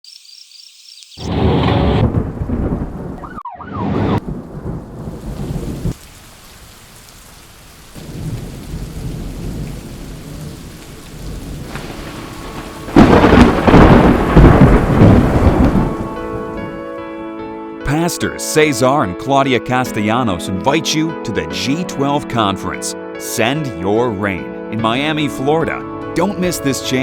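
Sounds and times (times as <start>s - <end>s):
rain: 0.1s - 3.2s, 4.2s - 16.6s
thunder rumbling: 1.2s - 6.9s, 7.9s - 16.9s.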